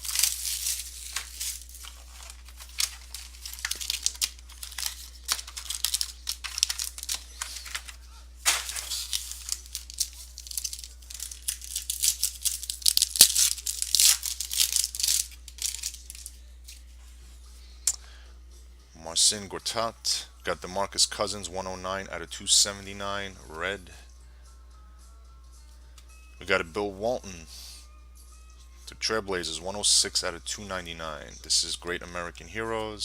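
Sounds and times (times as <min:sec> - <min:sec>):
wrappers crinkling and rustling: 0:00.0 - 0:16.9.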